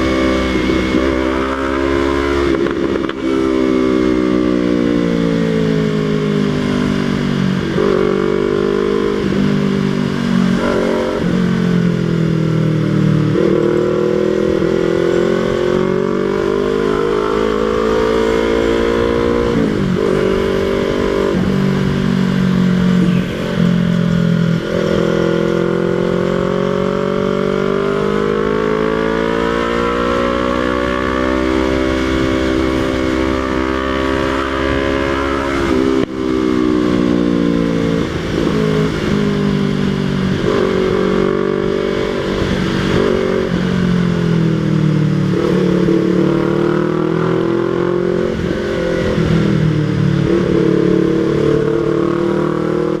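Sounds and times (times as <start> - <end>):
loud motorcycle engine: 0.0 - 53.0.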